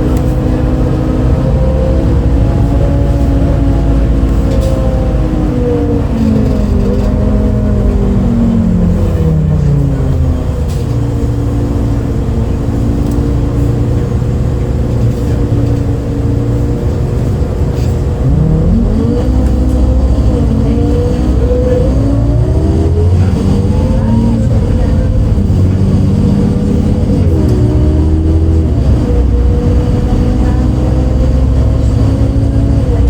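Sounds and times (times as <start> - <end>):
bus diesel engine: 0.0 - 33.0.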